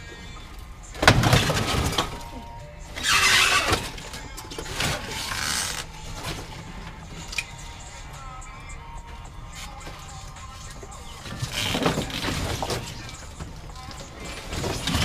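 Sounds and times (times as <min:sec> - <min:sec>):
background music: 0:00.0 - 0:15.0
hot tub crashing and breaking: 0:01.0 - 0:07.0.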